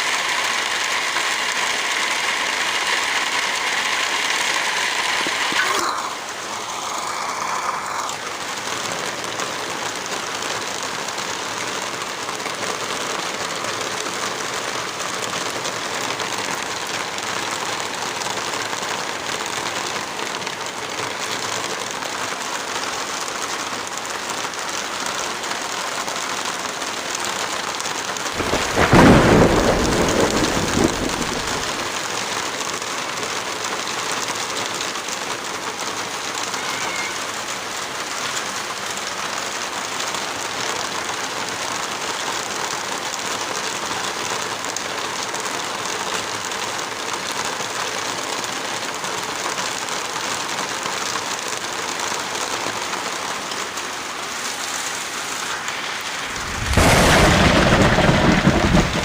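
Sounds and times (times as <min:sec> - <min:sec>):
heavy rain falling: 0:00.0 - 0:59.0
deep rumble: 0:56.2 - 0:59.0.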